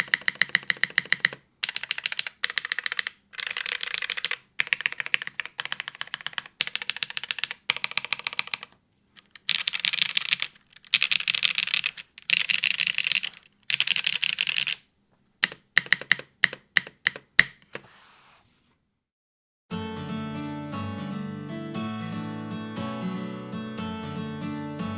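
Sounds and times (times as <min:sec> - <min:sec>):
mechanical keyboard typing: 0:00.0 - 0:14.8, 0:15.4 - 0:17.8.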